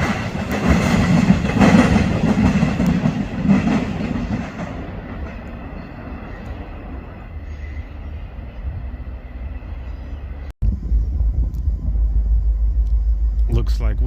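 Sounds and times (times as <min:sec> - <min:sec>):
train wheels rumbling on rails: 0:00.0 - 0:14.0
deep steady rumble: 0:10.6 - 0:14.0.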